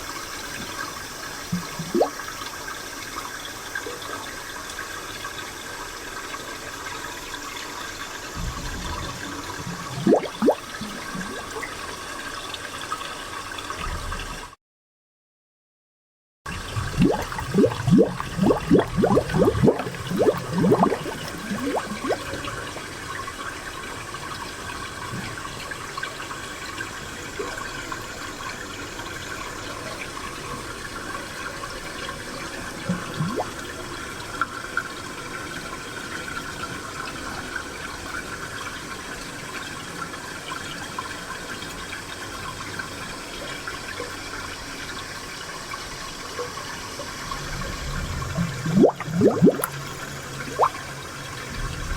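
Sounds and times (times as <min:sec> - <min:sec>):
spring water trickling: 0:00.0 - 0:03.8, 0:06.0 - 0:13.7, 0:16.5 - 0:28.8, 0:32.7 - 0:34.3, 0:44.3 - 0:51.9
bubbling water plops: 0:01.5 - 0:02.3, 0:08.4 - 0:11.6, 0:16.6 - 0:22.8, 0:32.9 - 0:33.6, 0:47.4 - 0:51.9.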